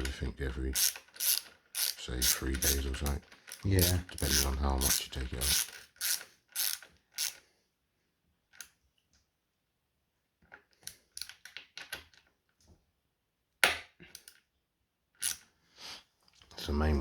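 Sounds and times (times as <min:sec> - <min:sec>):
hand tools clicking on bolts: 0:00.8 - 0:07.4.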